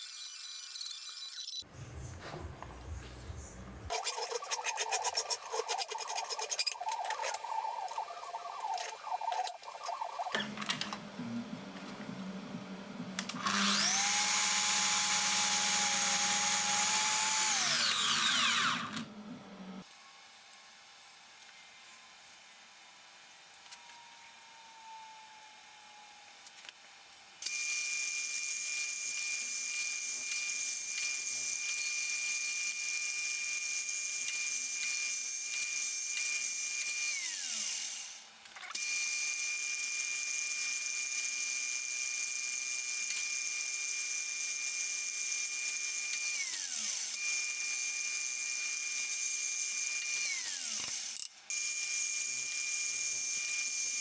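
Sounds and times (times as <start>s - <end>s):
power tool whining: 13.2s - 19.4s.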